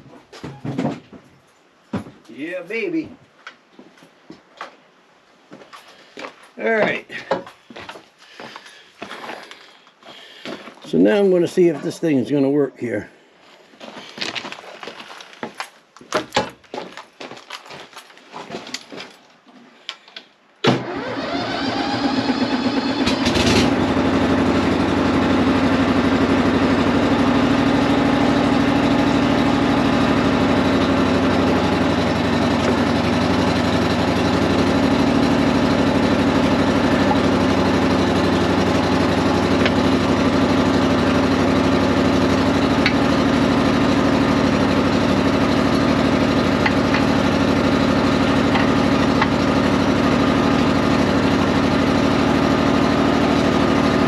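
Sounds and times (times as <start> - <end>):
skid steer engine running: 20.8 - 54.0.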